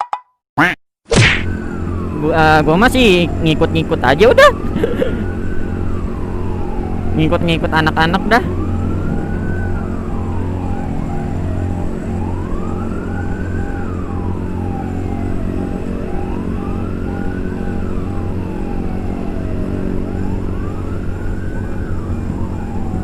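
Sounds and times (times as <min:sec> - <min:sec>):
siren wailing: 0:01.3 - 0:23.0
motorcycle engine humming: 0:08.4 - 0:23.0.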